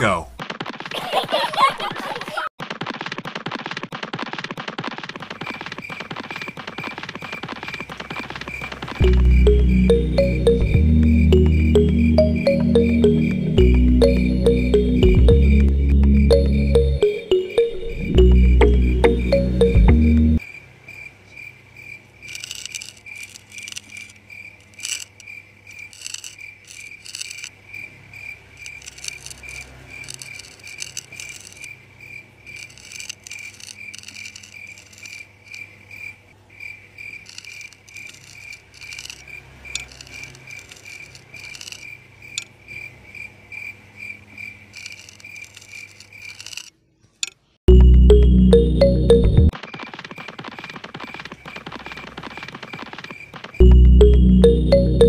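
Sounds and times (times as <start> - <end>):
cricket chirping: 5.3 - 19.7, 20.4 - 46.6.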